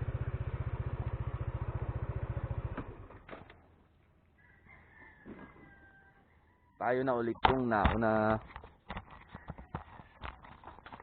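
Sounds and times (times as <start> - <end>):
small motorcycle engine idling: 0.0 - 3.8.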